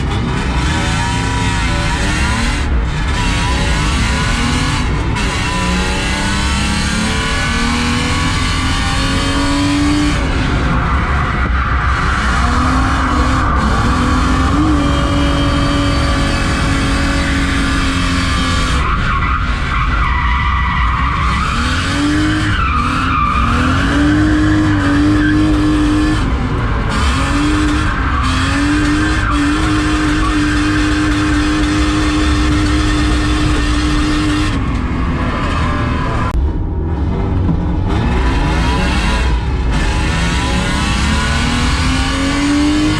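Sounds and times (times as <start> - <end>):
tyres skidding and squealing: 0.0 - 36.4, 37.7 - 42.9
car engine at high revs: 0.0 - 42.9.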